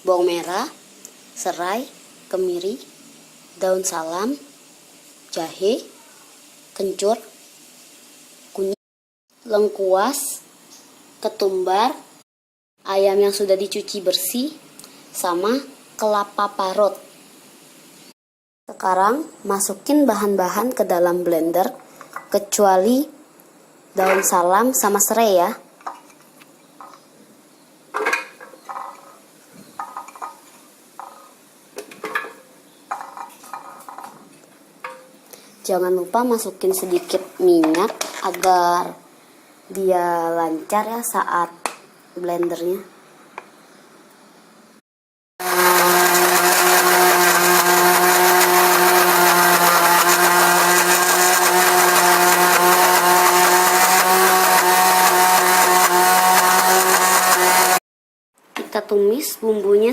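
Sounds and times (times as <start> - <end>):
blender motor whining: 45.4 - 57.8.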